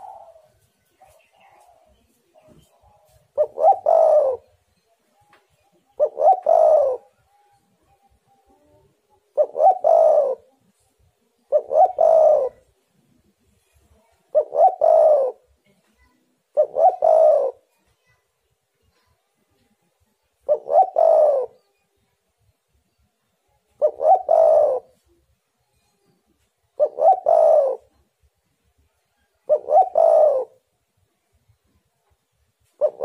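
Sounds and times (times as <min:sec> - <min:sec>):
dove cooing: 0:00.0 - 0:04.6, 0:05.8 - 0:07.7, 0:08.5 - 0:10.6, 0:11.4 - 0:12.7, 0:14.3 - 0:15.5, 0:16.5 - 0:17.7, 0:20.4 - 0:21.7, 0:23.7 - 0:25.1, 0:26.8 - 0:28.0, 0:29.4 - 0:30.7, 0:32.7 - 0:33.0.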